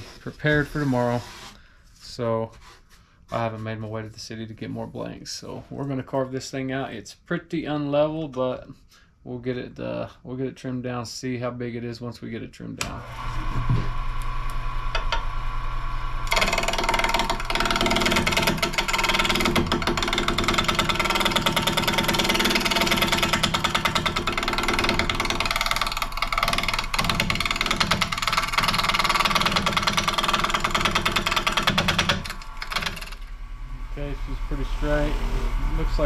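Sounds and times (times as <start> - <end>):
turning tool scraping wood: 0.0 - 3.9, 16.3 - 33.3
wood lathe running: 16.2 - 36.0.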